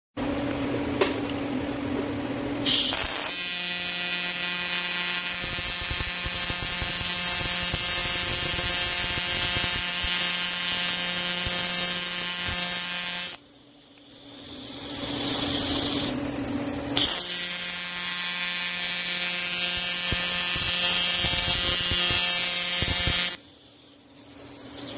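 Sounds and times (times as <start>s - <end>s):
electric buzz: 2.6s - 16.2s, 16.9s - 24.0s
welding arc hiss: 2.7s - 16.2s, 17.0s - 24.0s.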